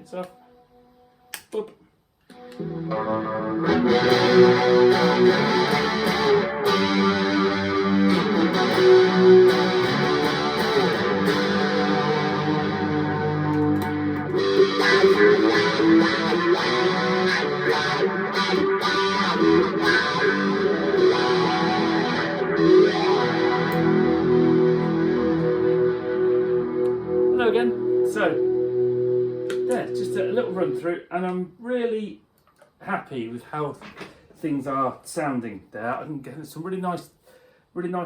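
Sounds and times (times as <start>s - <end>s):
distorted electric guitar: 2.3s - 31.0s.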